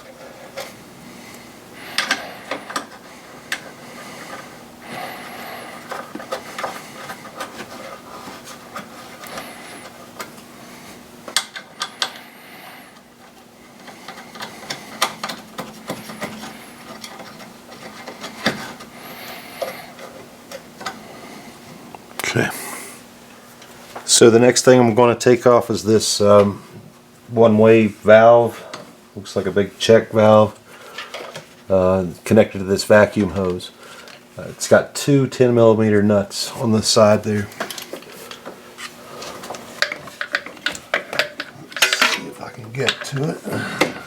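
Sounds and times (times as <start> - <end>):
metal bolts clinking and rattling: 39.8 - 42.3.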